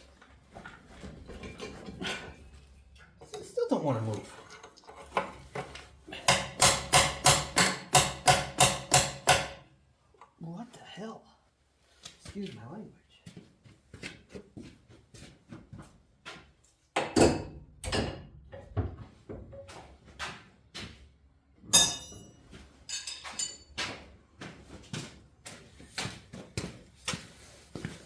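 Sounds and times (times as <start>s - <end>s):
hand tools knocking on metal: 5.1s - 9.6s, 17.0s - 19.8s, 21.7s - 24.0s
ringing metal clank: 21.7s - 23.7s.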